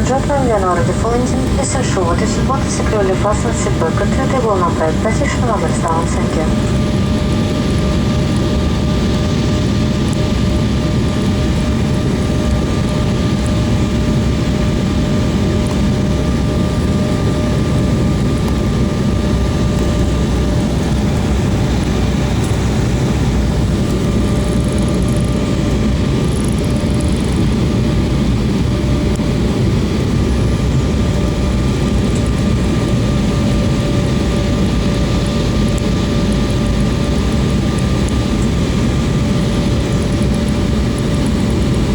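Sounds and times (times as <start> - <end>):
thin steady whine: 0.0 - 7.4
airliner cabin engine roar: 0.0 - 41.9.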